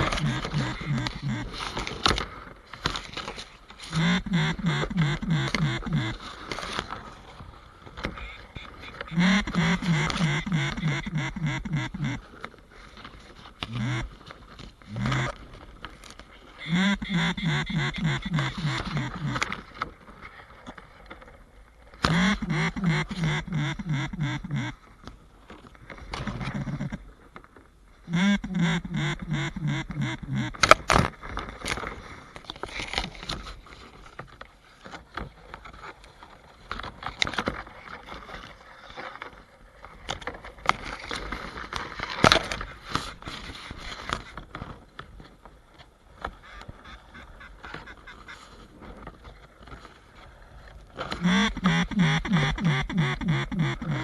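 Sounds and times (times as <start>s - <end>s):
duck call quacks: 0.0s - 1.6s, 3.9s - 6.2s, 8.1s - 12.2s, 13.7s - 14.1s, 14.9s - 15.4s, 16.6s - 19.5s, 22.0s - 24.8s, 26.4s - 27.0s, 28.1s - 30.6s, 51.2s - 54.0s.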